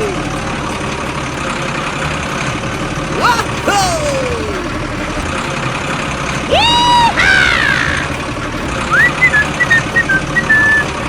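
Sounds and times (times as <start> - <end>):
vehicle engine idling: 0.0 - 11.0
high-pitched cartoon voice cries: 3.2 - 4.8.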